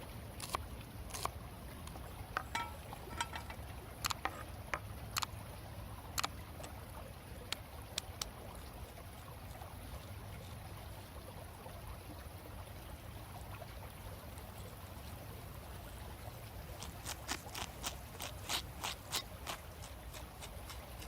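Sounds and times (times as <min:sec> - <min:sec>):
steady low background noise: 0:00.0 - 0:17.1
sharp clicks and knocks: 0:02.4 - 0:04.4.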